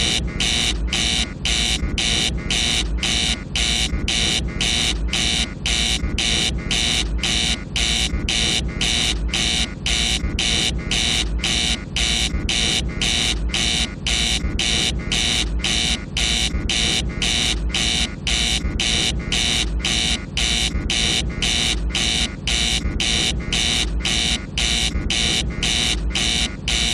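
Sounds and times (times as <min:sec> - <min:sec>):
rapid alarm beeps: 0:00.0 - 0:26.9.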